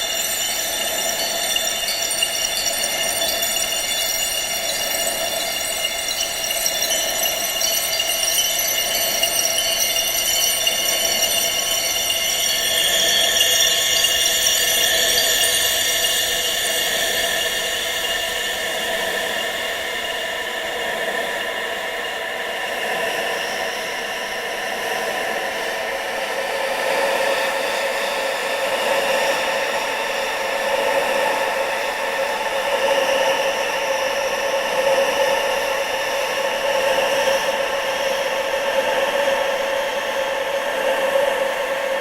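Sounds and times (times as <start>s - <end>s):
wind rushing with whistling tones: 0.0s - 23.7s.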